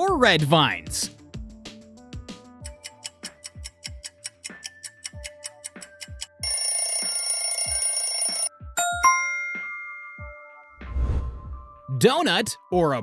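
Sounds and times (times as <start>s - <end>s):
clock ticking over a light beat: 1.4s - 7.1s.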